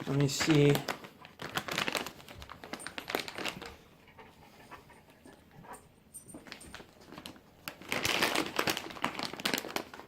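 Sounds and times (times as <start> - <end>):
dog panting: 3.9 - 5.9.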